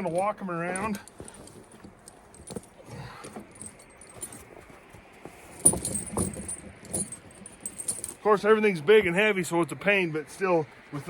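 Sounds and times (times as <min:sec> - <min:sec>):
steel chains clinking: 0:00.0 - 0:04.8, 0:05.5 - 0:08.4.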